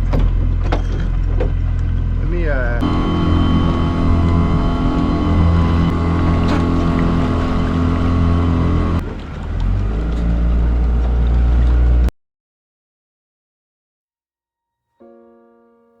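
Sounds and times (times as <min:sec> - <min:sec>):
motorboat engine running: 0:00.0 - 0:12.1.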